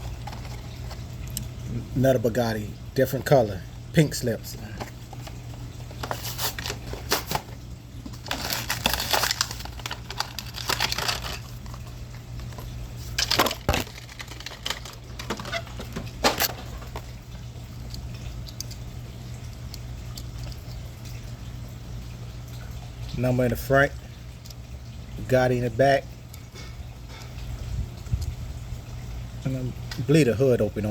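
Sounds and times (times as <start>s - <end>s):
blister packaging crinkling: 8.1s - 17.0s.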